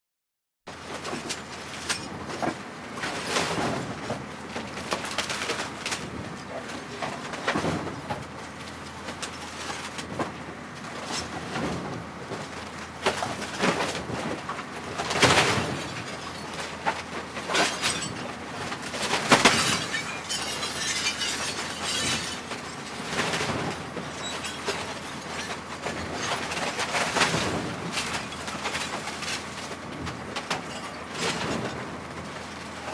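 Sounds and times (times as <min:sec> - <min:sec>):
garbage compactor crushing trash: 0:00.8 - 0:32.9
glass breaking: 0:15.2 - 0:29.2.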